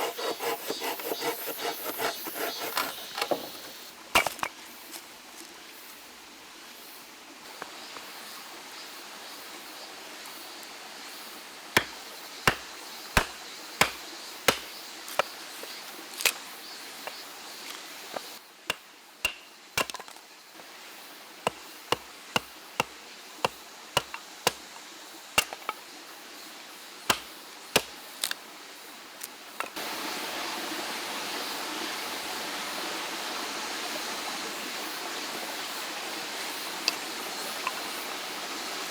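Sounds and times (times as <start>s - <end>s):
wood chopping knocks: 4.2s - 4.5s, 11.8s - 15.4s, 18.2s - 20.2s, 21.5s - 24.7s, 25.4s - 25.8s, 27.1s - 28.4s.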